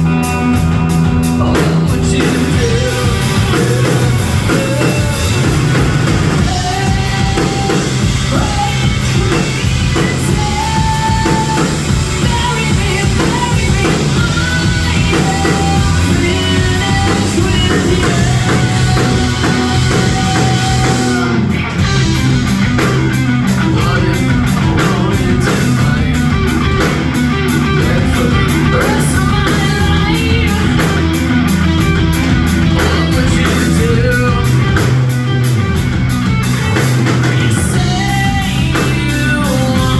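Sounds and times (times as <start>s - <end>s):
person singing: 0.0s - 35.4s, 36.5s - 39.9s
bass guitar: 0.0s - 39.9s
drums: 0.0s - 39.9s
guitars: 0.0s - 39.9s
rock band playing loudly: 0.0s - 39.9s.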